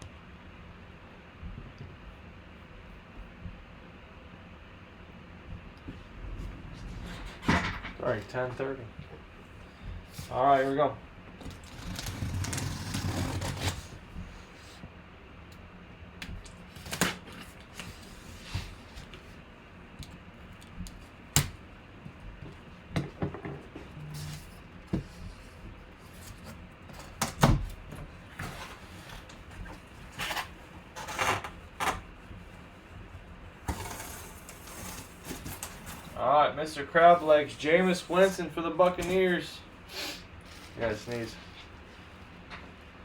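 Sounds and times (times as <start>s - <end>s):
packaging being opened by hand: 11.4s - 14.0s, 16.2s - 18.1s.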